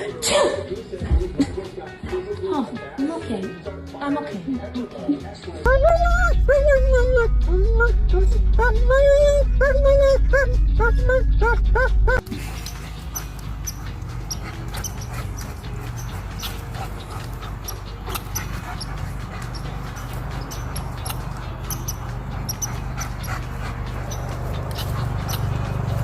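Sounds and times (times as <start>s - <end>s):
dog noises: 5.6s - 26.0s.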